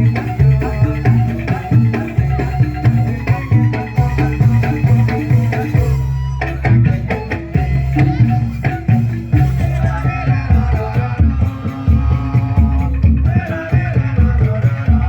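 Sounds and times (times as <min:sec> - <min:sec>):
music with steady beat: 0:00.0 - 0:15.0.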